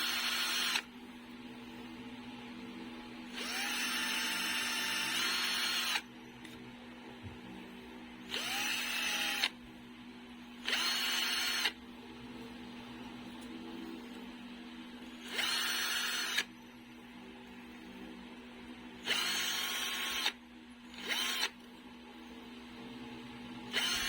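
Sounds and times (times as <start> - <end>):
electric drill whining: 0.0 - 0.9, 3.3 - 6.1, 8.3 - 9.6, 10.6 - 11.8, 15.2 - 16.5, 19.0 - 21.6, 23.7 - 24.0.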